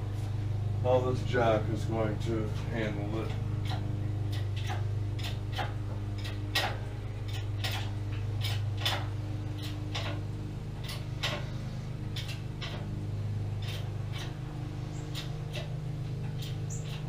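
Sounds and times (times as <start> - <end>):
steady low hum: 0.0 - 17.0
jack clicking: 12.1 - 13.0, 13.6 - 17.0.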